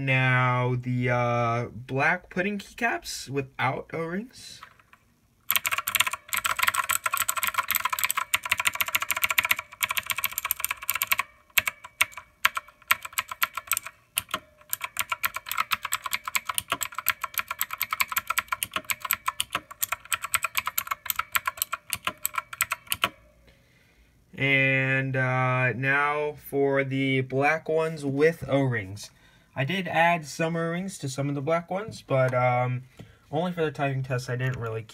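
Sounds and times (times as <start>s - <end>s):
fast mechanical keyboard typing: 4.6s - 23.2s.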